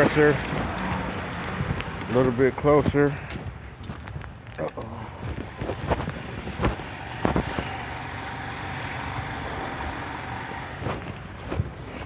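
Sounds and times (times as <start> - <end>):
air compressor engine humming: 0.0 - 12.0
knocks and clatters: 5.3 - 7.8.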